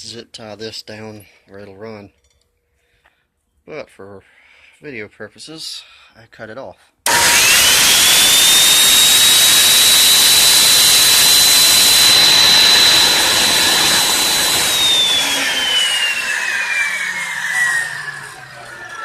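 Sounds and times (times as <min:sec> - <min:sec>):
table saw motor whine: 0:07.1 - 0:19.0.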